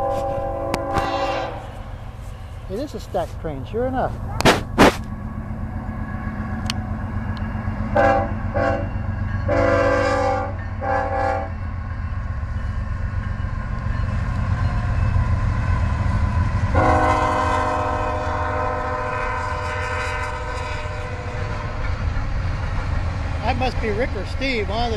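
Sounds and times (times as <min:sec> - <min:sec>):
locomotive air horn: 0:00.0 - 0:01.8, 0:07.9 - 0:08.9, 0:09.5 - 0:11.6, 0:16.7 - 0:21.7
rumble of rolling train: 0:00.0 - 0:24.9.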